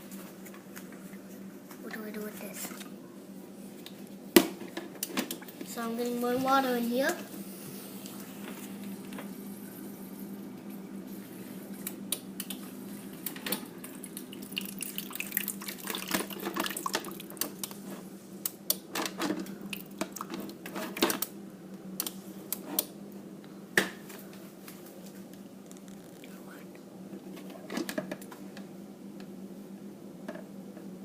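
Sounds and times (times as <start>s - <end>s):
refrigerator humming: 0.0s - 31.0s
water running into a jug: 13.9s - 17.6s.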